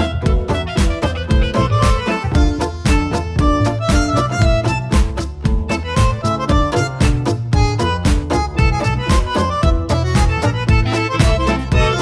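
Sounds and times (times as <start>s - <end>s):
upbeat fiddle music: 0.0s - 12.0s.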